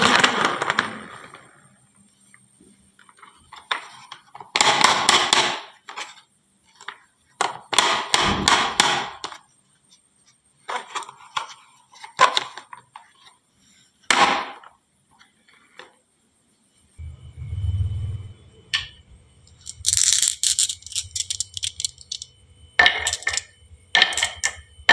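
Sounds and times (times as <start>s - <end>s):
marbles clattering down wooden run: 19.5s - 24.6s.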